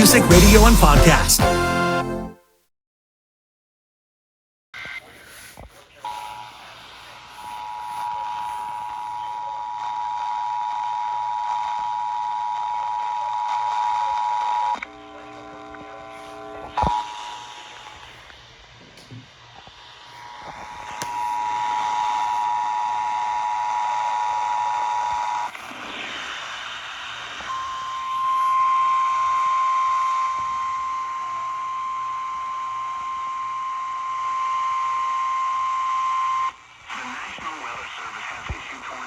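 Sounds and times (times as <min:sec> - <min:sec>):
radio noise: 0:00.0 - 0:01.6, 0:04.8 - 0:11.2, 0:14.6 - 0:18.6, 0:19.6 - 0:34.4, 0:36.5 - 0:39.0
two-tone alarm: 0:27.5 - 0:36.6.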